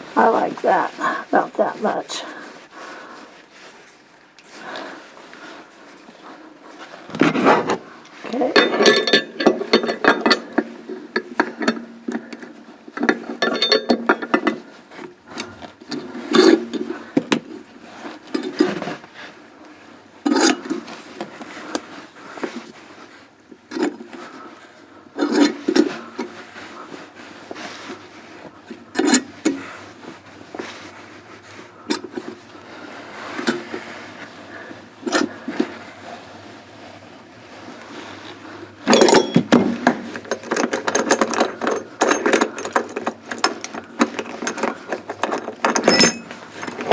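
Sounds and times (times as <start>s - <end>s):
metal scraping and creaking: 38.9s - 46.9s.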